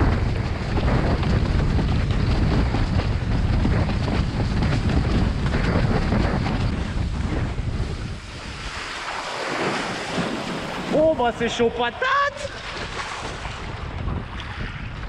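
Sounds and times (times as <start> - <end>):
wind buffeting microphone: 0.0 - 15.0
water rushing past: 6.6 - 15.0.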